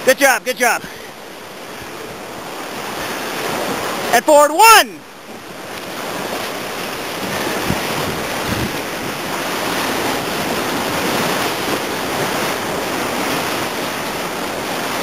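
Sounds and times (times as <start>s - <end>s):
whitewater rushing: 0.0s - 15.0s
wind noise on microphone: 5.4s - 15.0s.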